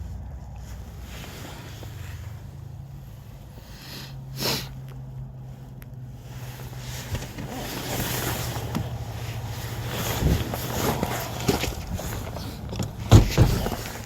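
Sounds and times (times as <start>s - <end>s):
rustling handling noise: 4.8s - 14.0s.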